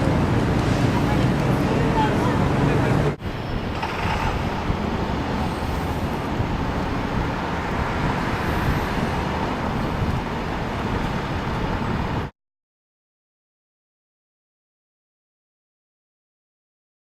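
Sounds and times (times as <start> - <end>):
city street traffic rumble: 0.0 - 12.3.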